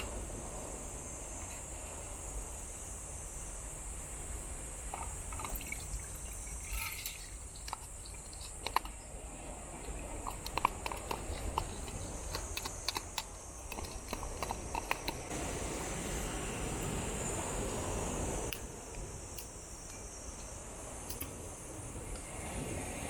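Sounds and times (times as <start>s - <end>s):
steady background hiss: 0.0s - 23.0s
light clicks and taps: 6.8s - 9.0s, 9.8s - 15.3s.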